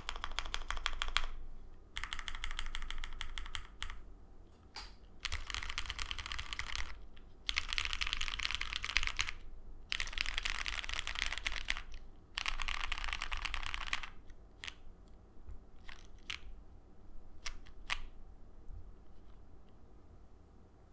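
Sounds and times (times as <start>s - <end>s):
mechanical keyboard typing: 0.0s - 4.0s, 5.2s - 14.8s, 15.8s - 16.5s, 17.4s - 18.2s.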